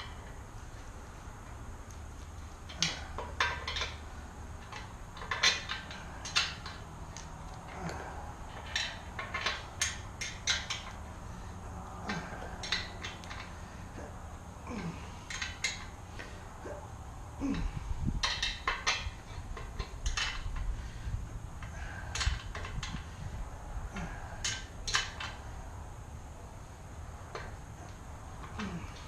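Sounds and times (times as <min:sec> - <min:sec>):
low steady hum: 0:00.0 - 0:29.0.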